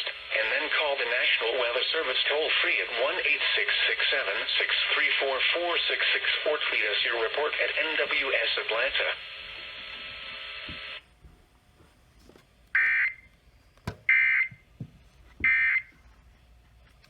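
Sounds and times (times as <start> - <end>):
buzzy radio tone: 0.0 - 11.0.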